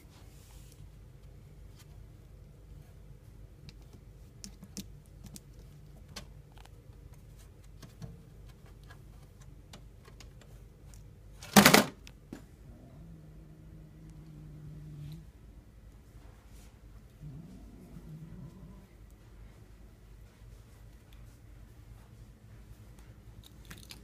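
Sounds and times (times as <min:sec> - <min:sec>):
cat growling: 0:12.6 - 0:15.4, 0:17.2 - 0:19.0.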